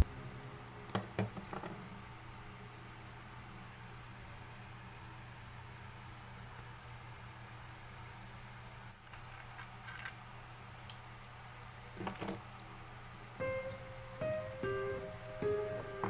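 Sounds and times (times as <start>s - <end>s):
faint steady hum: 0.0s - 16.0s
plucked-string background music: 13.4s - 16.0s.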